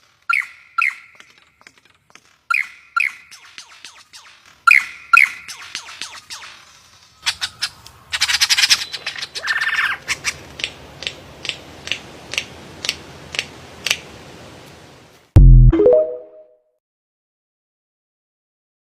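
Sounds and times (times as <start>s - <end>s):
bird calling: 0.3s - 1.5s, 2.5s - 10.5s.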